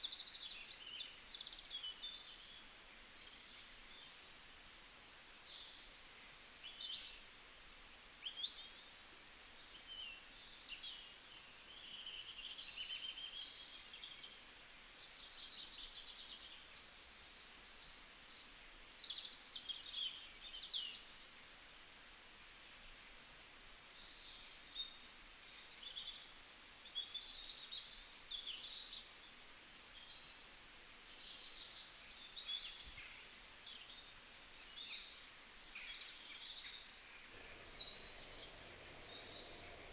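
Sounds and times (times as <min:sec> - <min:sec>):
faint background hiss: 0:00.0 - 0:39.9
birds chirping and singing: 0:36.9 - 0:39.9.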